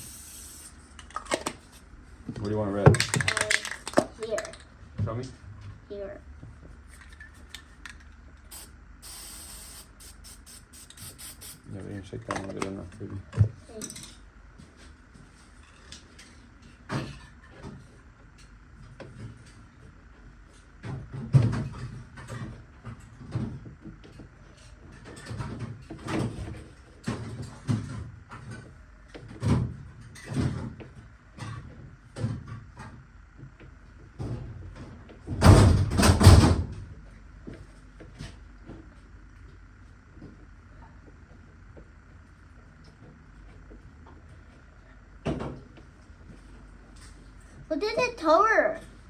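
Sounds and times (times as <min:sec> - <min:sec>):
faint high hum: 0:00.0 - 0:18.5.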